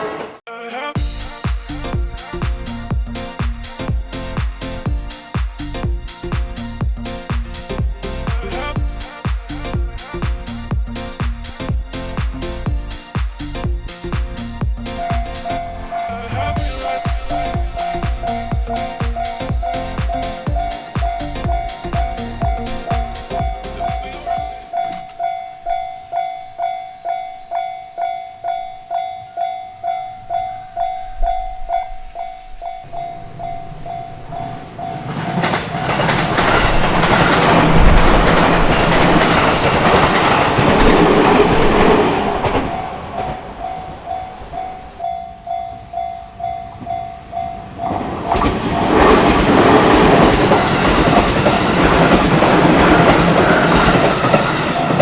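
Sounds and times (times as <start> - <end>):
train rumbling over rails: 1.0 - 25.4, 30.3 - 55.0
level-crossing bell ringing: 15.0 - 37.2, 42.8 - 47.6.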